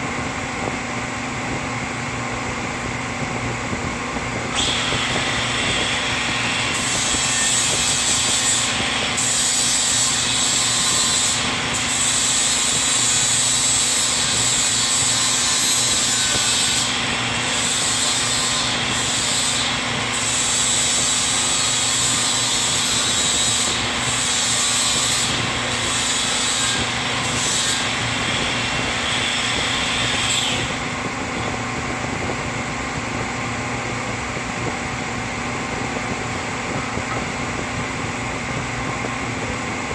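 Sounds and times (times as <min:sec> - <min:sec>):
angle grinder grinding metal: 0:04.5 - 0:30.9.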